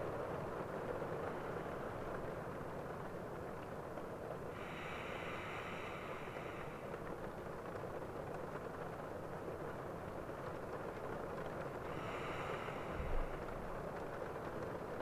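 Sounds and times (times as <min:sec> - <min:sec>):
steady rain: 0:00.0 - 0:15.0
man breathing in sleep: 0:04.5 - 0:07.1, 0:11.8 - 0:13.8.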